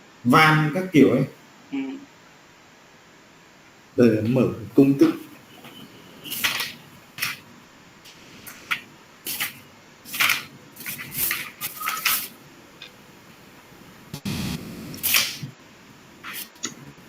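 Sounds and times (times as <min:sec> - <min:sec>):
paper pages swishing: 0:09.3 - 0:12.3.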